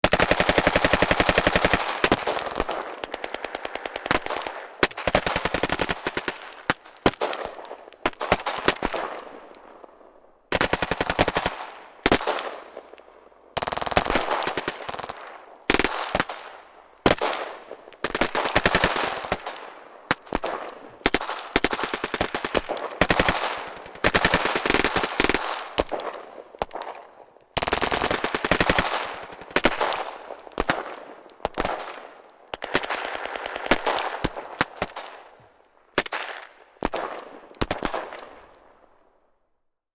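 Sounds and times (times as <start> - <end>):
automatic rifle fire: 0.0 - 9.3, 17.1 - 35.2.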